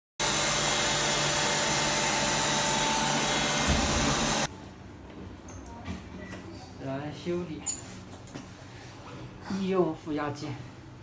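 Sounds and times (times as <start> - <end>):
suction machine blower motor running: 0.2 - 4.5.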